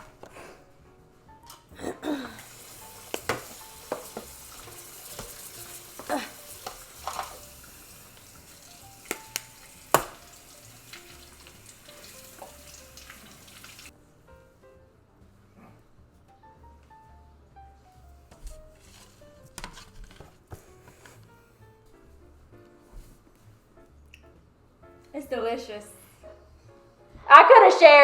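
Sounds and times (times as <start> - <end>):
utensils and dishes clinking: 1.4 - 13.9.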